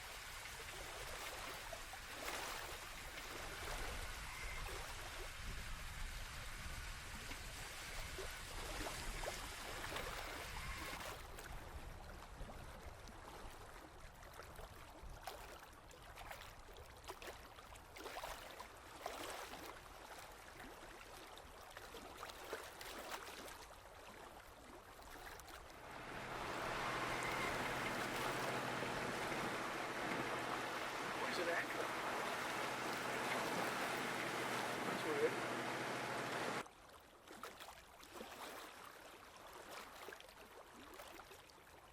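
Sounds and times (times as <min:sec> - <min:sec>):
water lapping against boat hull: 0:25.0 - 0:36.6.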